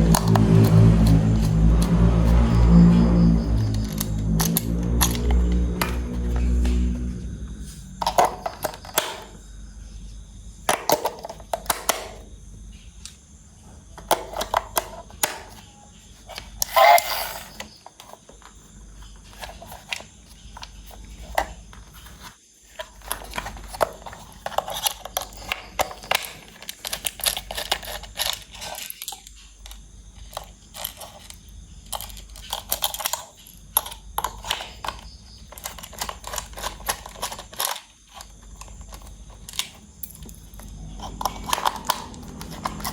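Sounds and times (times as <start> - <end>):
toy parts clicking and rattling: 3.4 - 9.4, 14.0 - 15.6, 16.2 - 18.2, 19.2 - 42.9
loud scrape: 16.6 - 17.6.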